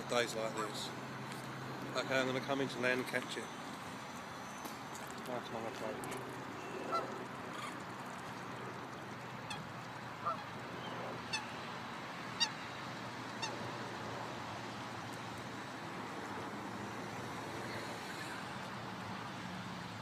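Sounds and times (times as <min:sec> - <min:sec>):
steady background hum: 0:00.0 - 0:20.0
bird calling: 0:06.5 - 0:11.6, 0:12.3 - 0:13.6.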